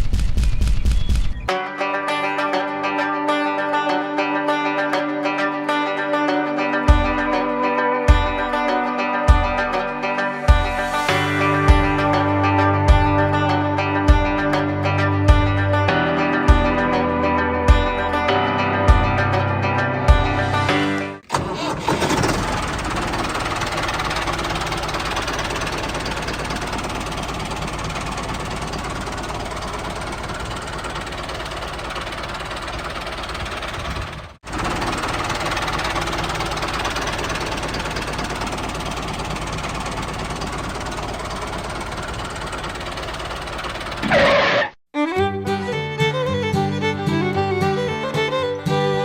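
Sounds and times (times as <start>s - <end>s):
small engine knocking evenly: 22.0s - 44.1s.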